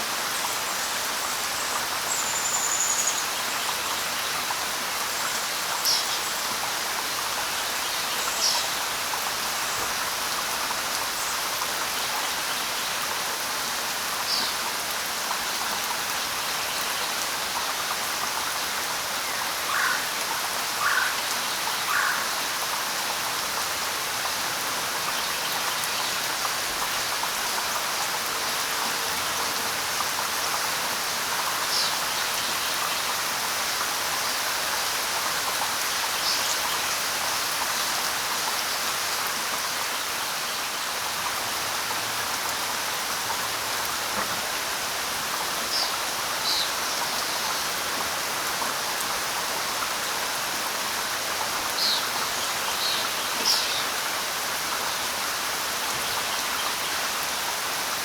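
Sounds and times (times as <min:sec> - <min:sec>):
light rain falling: 0:00.0 - 0:58.0.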